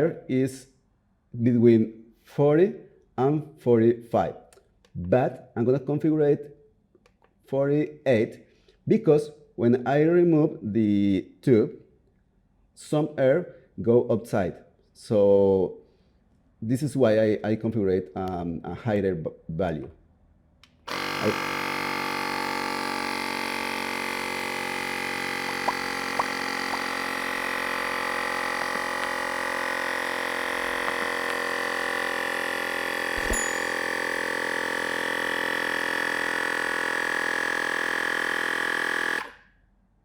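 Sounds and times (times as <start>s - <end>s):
air compressor motor whining: 20.9s - 39.4s.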